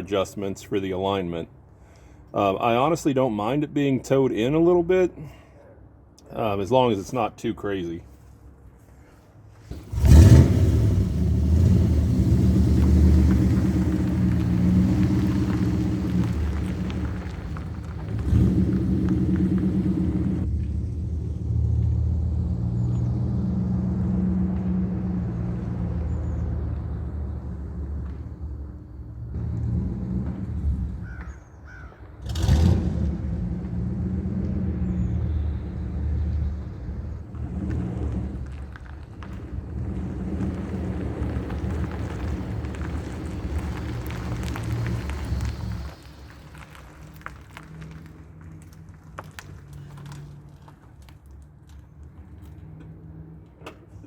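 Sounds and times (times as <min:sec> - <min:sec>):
truck engine running: 0:09.7 - 0:22.7, 0:35.3 - 0:50.7
crow cawing: 0:31.0 - 0:32.0.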